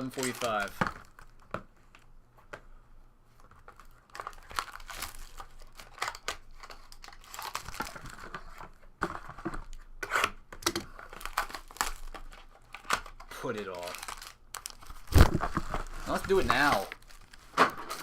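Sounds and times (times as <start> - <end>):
packaging crinkling and tearing: 0.0 - 1.5, 3.6 - 8.8, 10.6 - 18.0.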